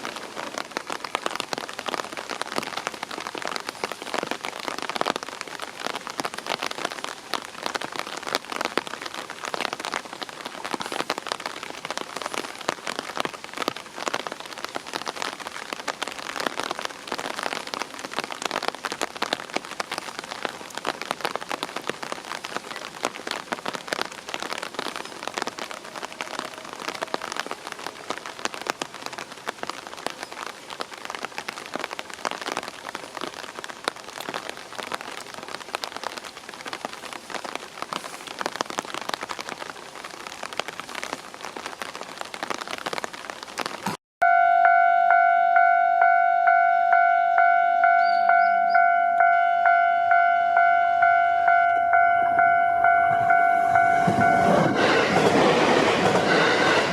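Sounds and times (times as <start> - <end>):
heavy rain falling: 0.0 - 56.9
level-crossing warning bell: 44.2 - 56.9.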